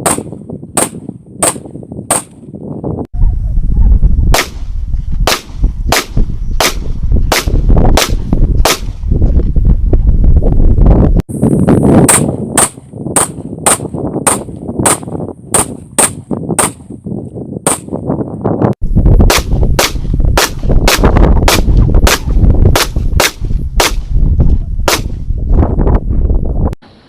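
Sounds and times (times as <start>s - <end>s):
steady low rumble: 1.1s - 17.0s, 17.9s - 27.0s
pistol shots: 5.3s - 8.9s.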